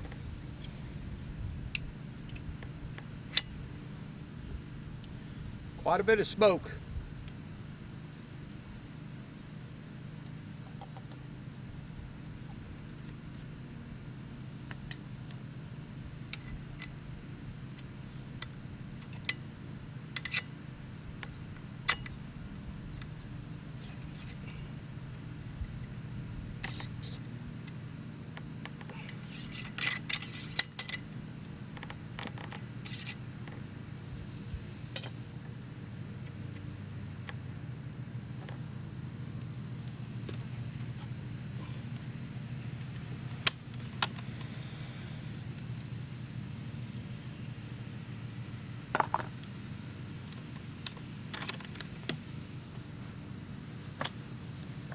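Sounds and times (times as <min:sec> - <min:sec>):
steady low hum: 0:00.0 - 0:07.5, 0:20.7 - 0:54.9
high thin insect drone: 0:00.6 - 0:07.6, 0:20.1 - 0:54.9.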